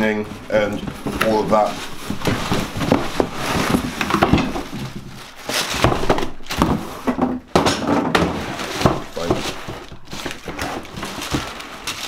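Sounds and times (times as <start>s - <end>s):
paper packaging rustling: 0.0s - 12.0s
knocks on cardboard box: 5.7s - 11.5s.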